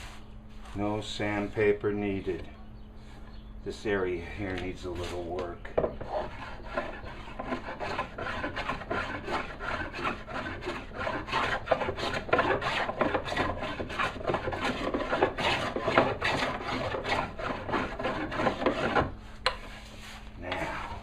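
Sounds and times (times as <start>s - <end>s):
hand plane shaving wood: 6.0s - 20.8s.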